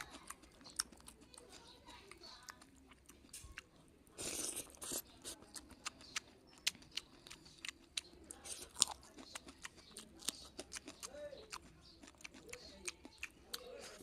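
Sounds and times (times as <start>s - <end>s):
person chewing crunchy food: 0.0s - 14.0s
crunchy bite: 4.2s - 14.0s.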